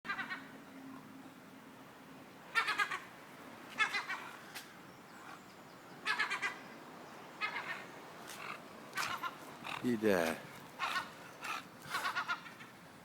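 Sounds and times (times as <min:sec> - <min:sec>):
gull alarm calls: 0:00.1 - 0:00.5, 0:02.5 - 0:03.1, 0:03.8 - 0:04.4, 0:06.0 - 0:06.6, 0:07.4 - 0:12.7.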